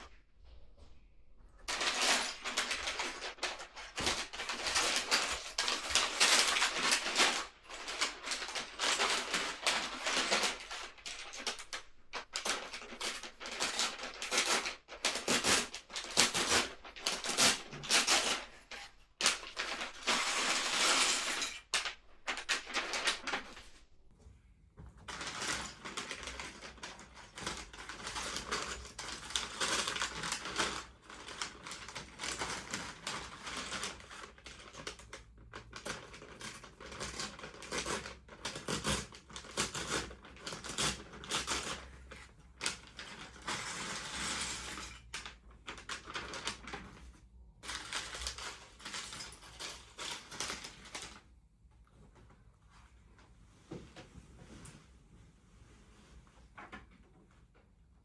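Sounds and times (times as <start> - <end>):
packaging crinkling: 1.7 - 23.9.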